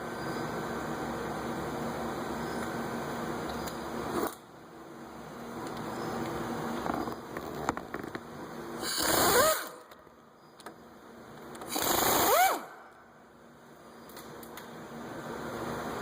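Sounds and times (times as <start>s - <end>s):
power tool whirring with hiss: 8.8s - 9.8s, 11.7s - 12.8s.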